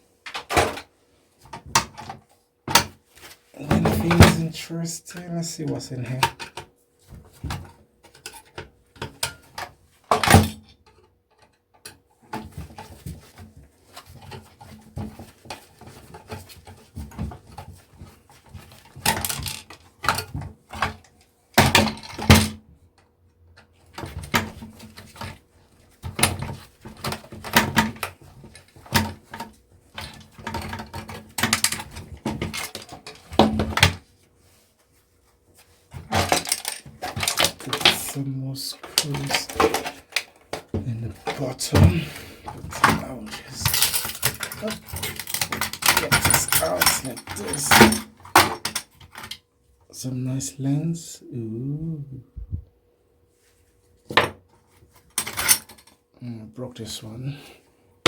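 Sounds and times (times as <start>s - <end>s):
parts clattering on surface: 35.9s - 49.4s, 54.0s - 56.0s.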